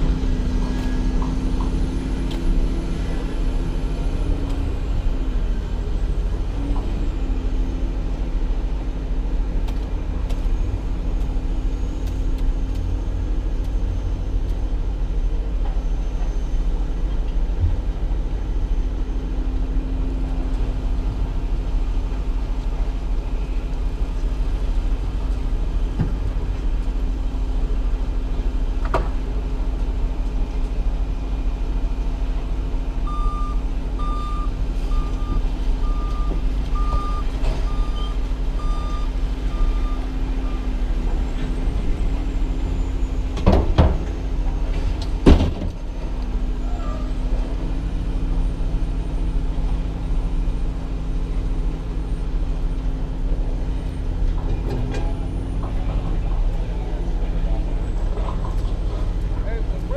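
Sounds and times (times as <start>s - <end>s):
vehicle engine running: 0.0s - 15.7s.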